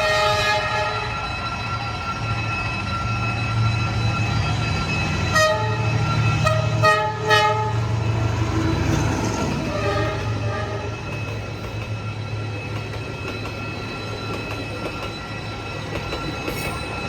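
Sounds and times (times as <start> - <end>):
train horn toots: 0.0 - 1.3, 5.3 - 11.1
train engine drone: 0.0 - 17.0.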